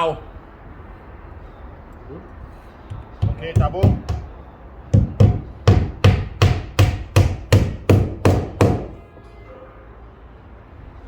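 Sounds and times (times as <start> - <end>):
hammer driving a nail: 2.9 - 4.3, 4.9 - 9.0.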